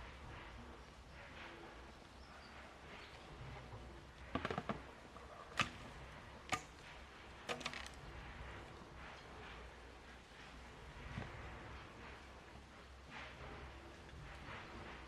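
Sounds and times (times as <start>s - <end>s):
sharp knocks and clicks: 4.3s - 4.9s.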